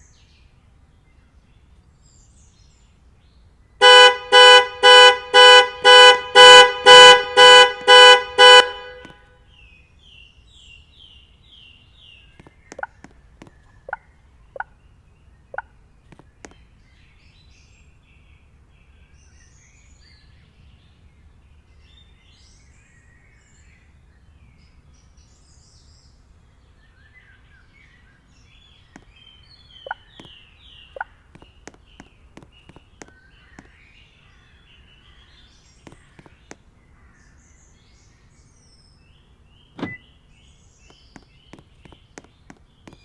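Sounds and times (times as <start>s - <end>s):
birds chirping: 0.0s - 43.0s
low outdoor background: 0.0s - 43.0s.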